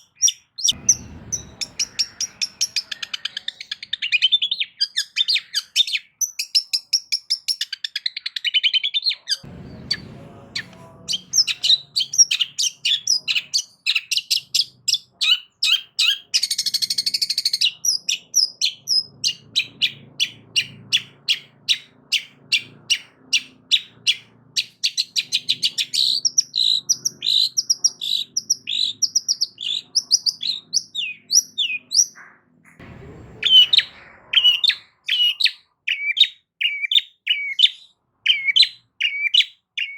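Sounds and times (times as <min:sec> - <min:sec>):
bird singing chirps and trills: 0:00.0 - 0:32.4
harsh rasping bird note: 0:00.8 - 0:03.8.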